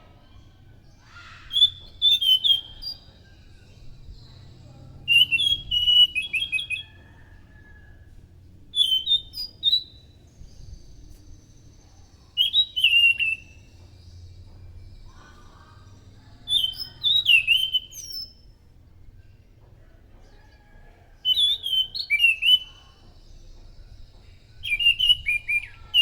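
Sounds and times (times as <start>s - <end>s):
thrush singing whistled notes: 1.5s - 3.6s, 5.1s - 7.1s, 8.7s - 10.1s, 12.3s - 13.8s, 16.5s - 18.4s, 21.3s - 22.8s, 24.6s - 26.0s.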